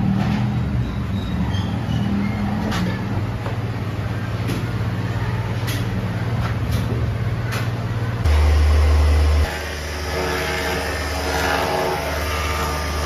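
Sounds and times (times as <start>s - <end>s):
machinery humming: 7.1s - 13.0s.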